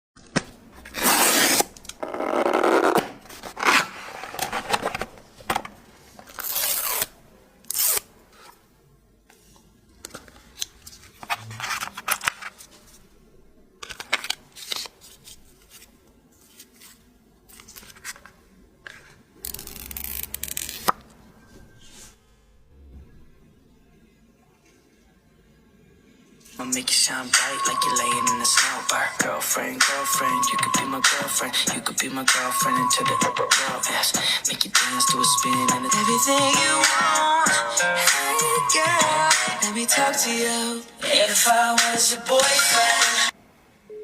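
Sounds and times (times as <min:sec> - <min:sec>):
paper and cardboard tearing: 0:00.9 - 0:01.7.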